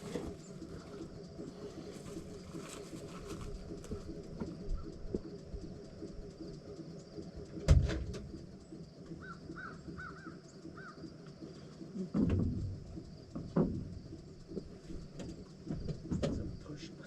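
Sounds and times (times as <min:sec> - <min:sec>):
bird calls: 0:00.0 - 0:12.2
heavy machinery running: 0:00.0 - 0:17.0.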